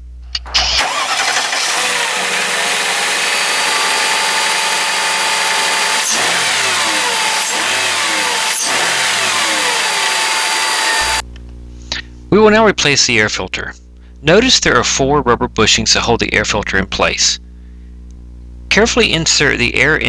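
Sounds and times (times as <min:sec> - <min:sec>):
car engine running with whine: 0:00.4 - 0:11.2.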